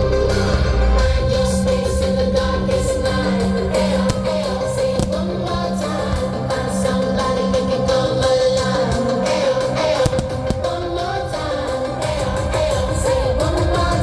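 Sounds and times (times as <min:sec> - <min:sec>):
loud music with singing and guitar: 0:00.0 - 0:14.0
fireworks cracking: 0:03.9 - 0:06.6, 0:09.8 - 0:11.9.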